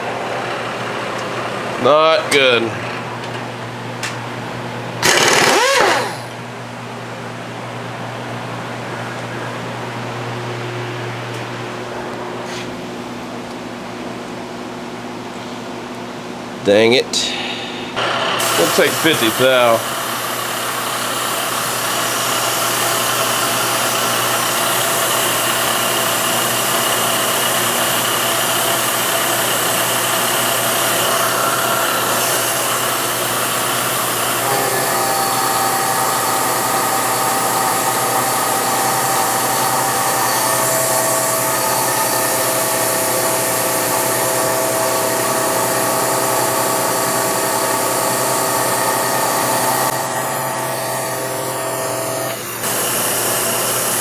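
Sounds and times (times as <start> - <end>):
milling machine cutting steel: 5.0 - 6.3, 18.0 - 54.0.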